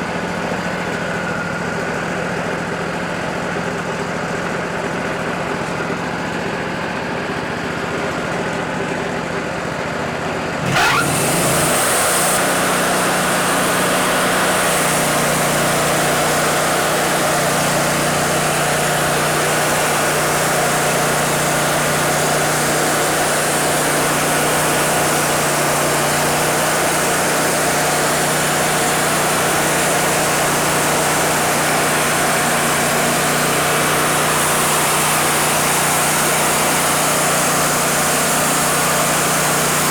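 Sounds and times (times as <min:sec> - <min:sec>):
sawmill engine revving: 0:10.2 - 0:39.9.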